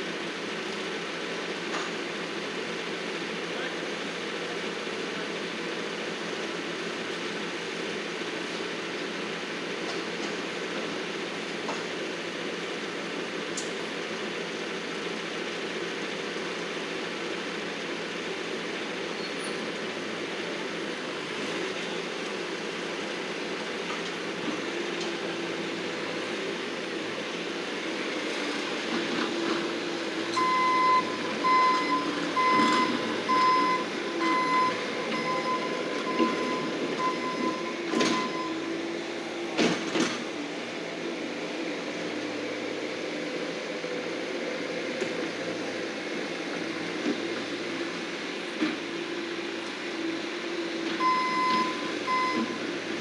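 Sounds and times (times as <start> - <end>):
loader engine running: 0.1 - 53.0
reverse alarm beeping: 30.3 - 38.7, 51.0 - 52.6.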